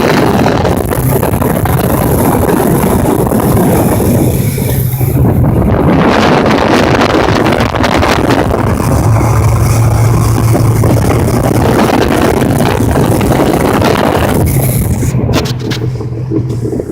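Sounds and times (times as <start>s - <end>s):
jet ski engine running: 0.0s - 16.9s.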